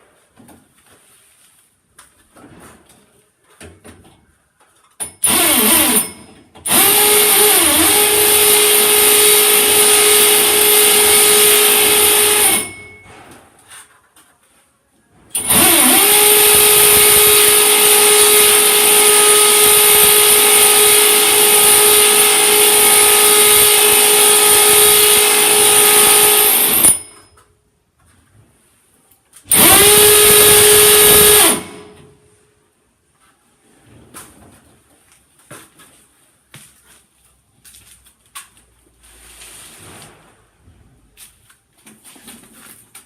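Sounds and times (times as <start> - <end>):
electric drill running: 5.2 - 6.1, 6.7 - 12.8, 15.4 - 27.2, 29.5 - 32.1.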